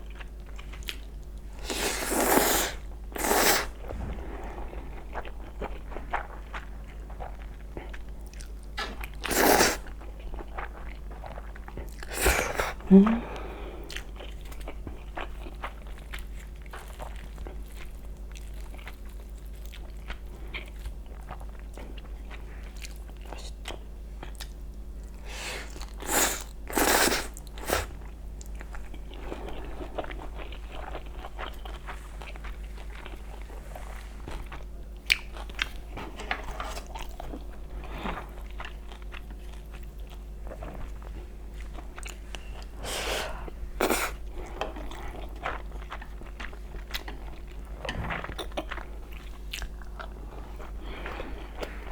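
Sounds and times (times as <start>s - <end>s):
person chewing: 0.0s - 3.9s, 4.5s - 22.0s, 22.7s - 51.9s
biting or slurping: 1.6s - 4.1s, 8.8s - 9.9s, 12.0s - 12.8s, 25.4s - 28.0s.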